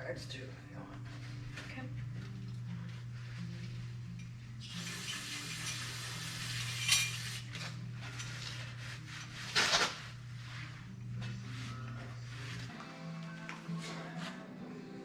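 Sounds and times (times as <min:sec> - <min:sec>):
steady low hum: 0:00.0 - 0:04.8, 0:05.7 - 0:13.3
metal tools clinking and scraping: 0:05.6 - 0:09.9.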